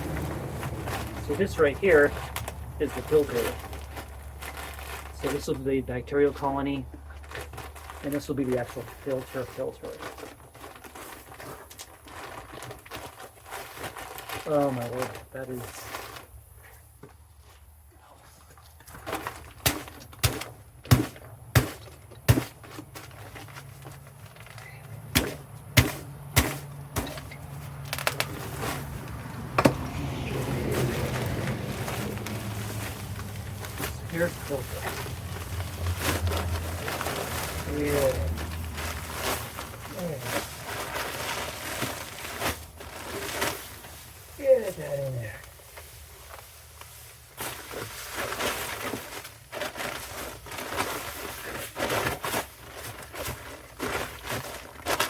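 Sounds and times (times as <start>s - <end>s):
gritty granules crunching: 0.0s - 55.0s
rushing scraping noise: 25.1s - 43.4s.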